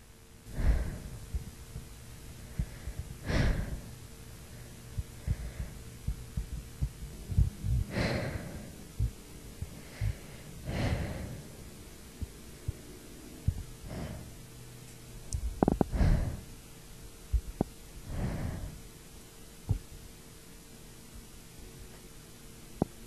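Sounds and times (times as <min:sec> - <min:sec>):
soft low thumps: 0:00.5 - 0:14.4, 0:17.3 - 0:18.8, 0:19.6 - 0:20.0.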